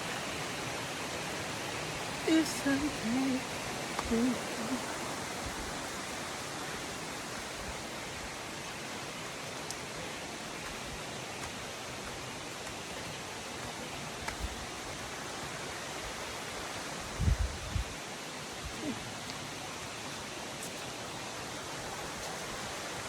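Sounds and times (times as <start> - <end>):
flowing water rushing: 0.0 - 23.0.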